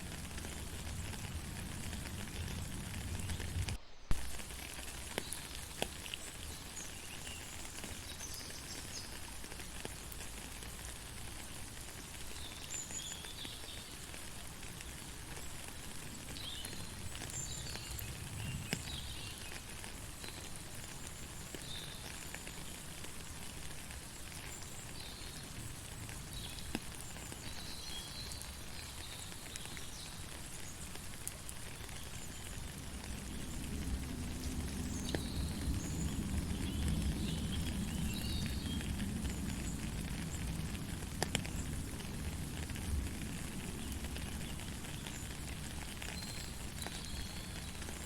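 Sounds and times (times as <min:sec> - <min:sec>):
rain falling: 0:00.0 - 0:48.0.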